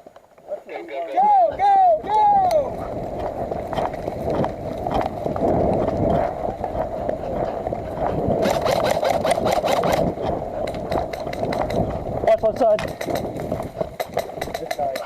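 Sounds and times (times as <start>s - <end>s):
steady rushing noise: 1.3s - 15.0s
rapid clicking: 8.2s - 12.0s, 12.8s - 15.0s
knocks from movement and gear: 8.4s - 12.0s, 12.7s - 15.0s.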